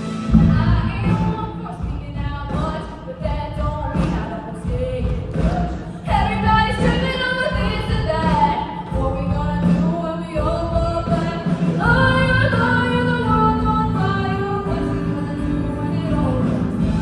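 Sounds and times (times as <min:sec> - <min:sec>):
sustained low accompaniment: 0:00.0 - 0:01.6
woman singing: 0:00.3 - 0:17.0.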